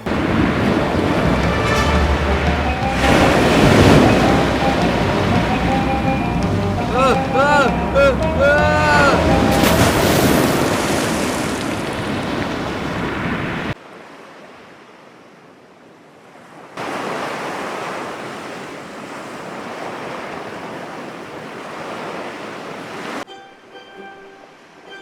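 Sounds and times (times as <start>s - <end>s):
ocean waves and surf: 0.0s - 25.0s.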